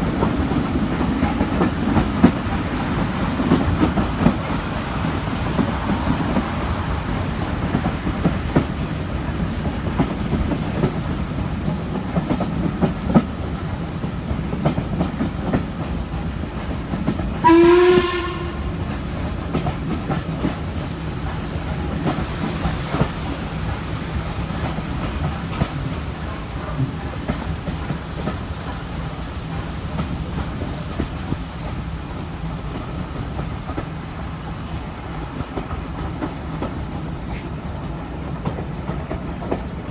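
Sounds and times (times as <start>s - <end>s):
train running noise: 0.0s - 39.9s
wheels clattering on rail joints: 0.0s - 39.9s
steam locomotive whistle: 17.3s - 19.1s.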